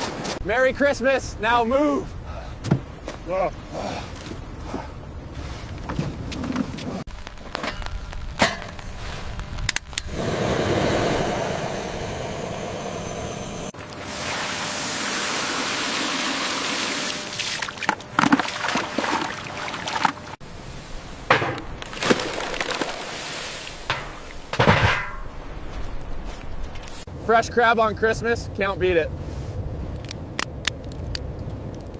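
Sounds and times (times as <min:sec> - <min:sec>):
water rushing and splashing: 0:13.6 - 0:20.4, 0:21.8 - 0:24.5.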